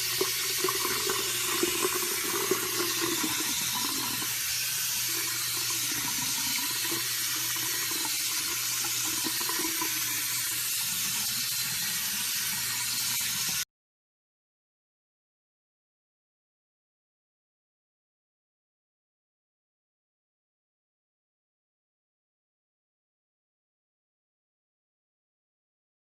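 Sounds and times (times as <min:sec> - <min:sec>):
running water rushing: 0:00.0 - 0:13.6.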